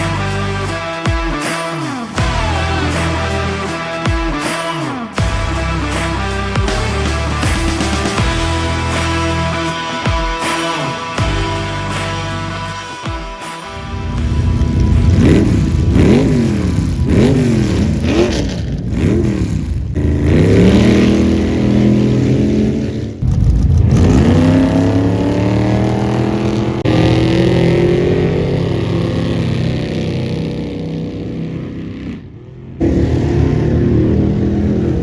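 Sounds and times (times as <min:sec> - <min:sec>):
race car engines revving: 0:13.7 - 0:35.0.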